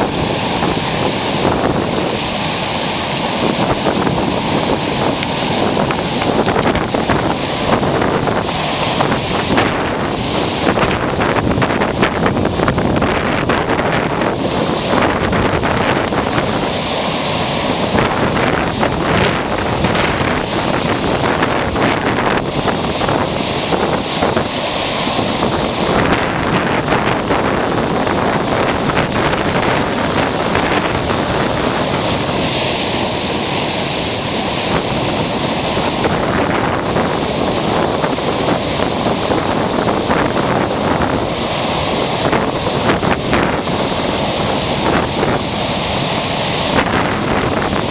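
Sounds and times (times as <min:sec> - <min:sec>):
ocean surf breaking: 0:00.0 - 0:47.9
wind noise on microphone: 0:00.0 - 0:47.9.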